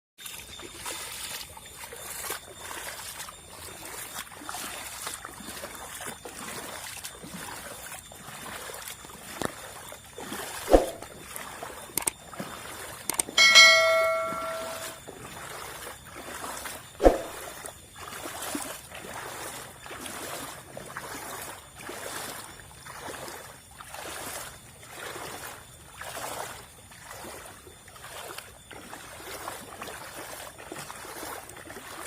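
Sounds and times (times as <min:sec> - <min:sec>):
floodwater running: 0:00.2 - 0:32.0
bell-like metallic ring: 0:13.2 - 0:15.0.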